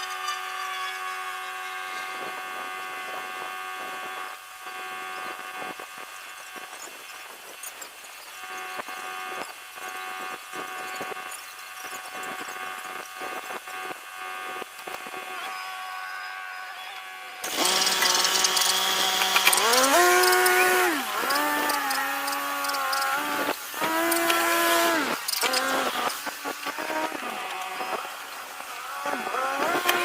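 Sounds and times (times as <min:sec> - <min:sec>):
skid steer engine revving: 0:17.4 - 0:30.0.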